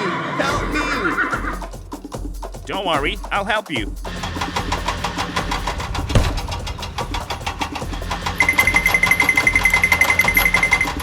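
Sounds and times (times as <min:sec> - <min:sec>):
construction vehicle engine chugging: 0:04.0 - 0:11.0
thump: 0:06.0 - 0:07.1.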